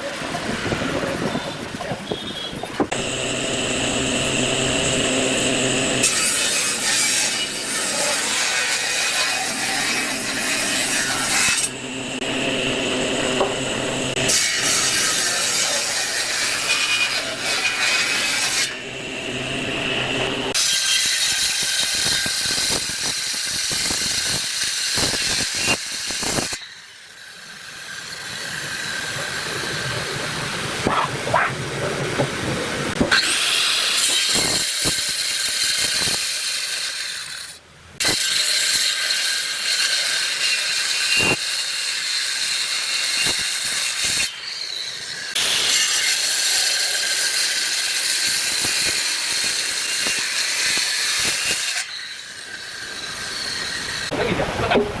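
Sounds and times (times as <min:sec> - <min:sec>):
power tool whirring on wood: 0:02.9 - 0:29.8.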